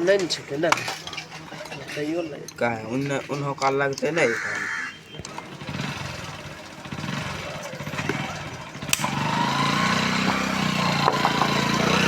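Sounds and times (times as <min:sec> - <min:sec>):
small engine running: 0:05.3 - 0:12.0.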